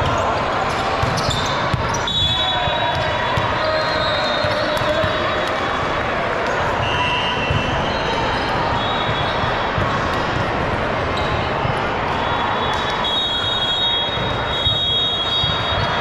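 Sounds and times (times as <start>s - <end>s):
basketball bouncing: 0.0s - 2.0s, 8.7s - 11.8s
sneaker squeaks: 0.0s - 5.4s, 11.2s - 11.5s, 12.2s - 16.0s
crowd chatter: 0.0s - 16.0s.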